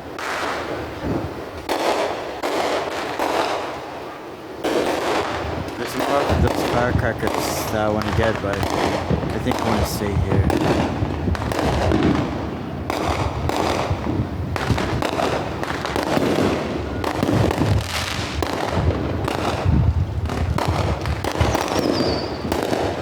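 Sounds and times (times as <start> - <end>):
fireworks bangs and crackles: 0.0 - 23.0
falling firework whistle: 21.3 - 23.0.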